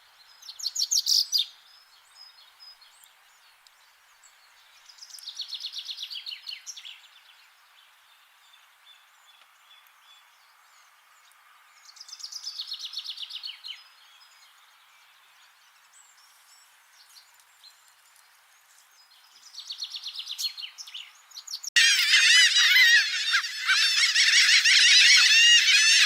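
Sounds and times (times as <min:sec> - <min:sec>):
faint background noise: 0:00.0 - 0:26.0
loud honking call: 0:21.8 - 0:26.0
small bird trilling: 0:21.8 - 0:26.0.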